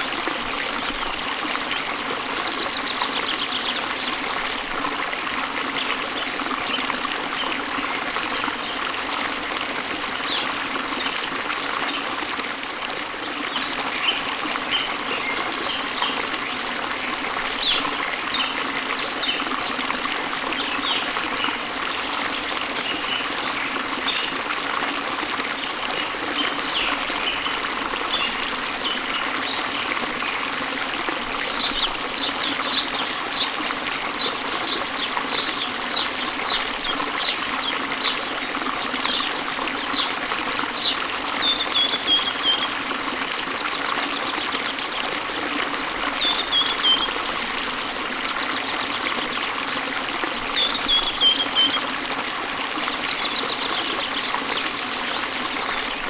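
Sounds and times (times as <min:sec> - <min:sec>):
water rushing: 0:00.0 - 0:56.0.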